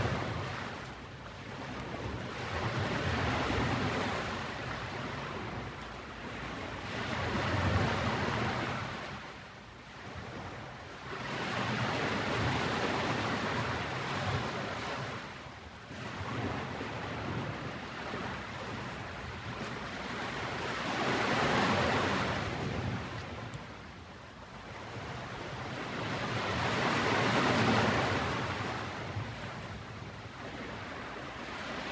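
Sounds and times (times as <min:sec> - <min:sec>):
ocean waves breaking on beach: 0:00.0 - 0:31.9.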